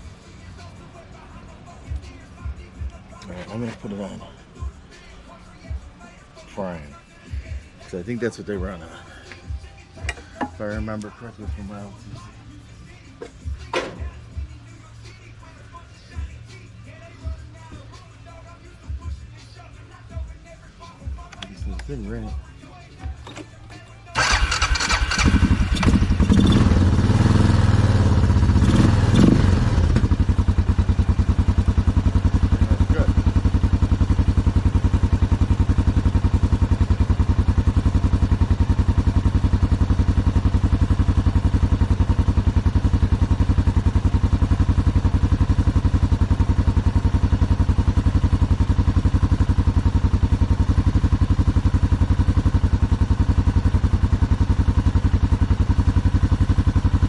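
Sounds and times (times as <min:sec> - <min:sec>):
atv engine starting and idling: 0:23.0 - 0:57.0.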